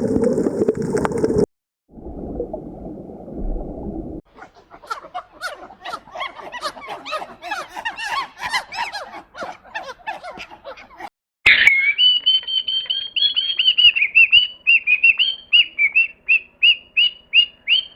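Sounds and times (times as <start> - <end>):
bird chirping: 11.5 - 17.9.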